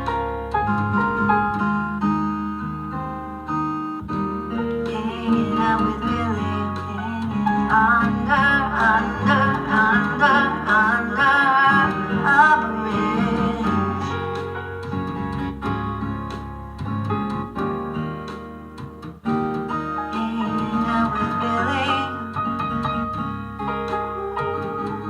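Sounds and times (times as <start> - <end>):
acoustic guitar: 0.0 - 25.0
person singing wavering voice: 4.8 - 14.4, 20.1 - 22.4.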